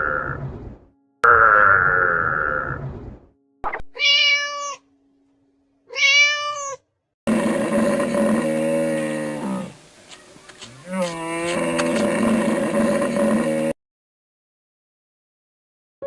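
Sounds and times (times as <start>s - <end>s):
cat meowing: 4.0s - 4.8s, 5.9s - 6.8s
low rough animal call: 7.3s - 9.8s, 10.6s - 13.8s.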